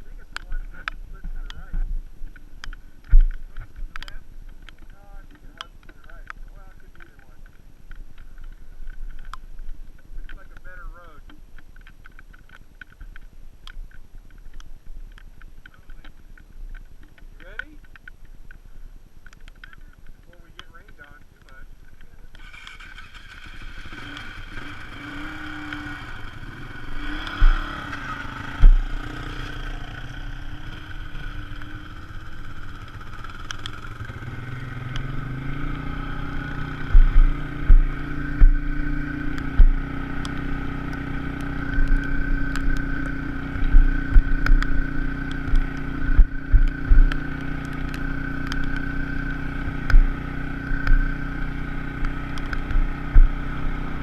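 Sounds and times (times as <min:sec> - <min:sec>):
vehicle engine running: 0:00.0 - 0:11.3, 0:19.6 - 0:54.0
low thumps and clatter: 0:00.4 - 0:18.6, 0:26.8 - 0:29.5, 0:34.9 - 0:54.0.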